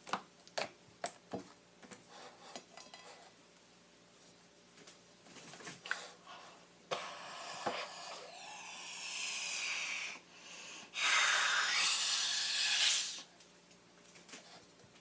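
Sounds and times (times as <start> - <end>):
slime squelching and hissing: 10.9 - 13.3.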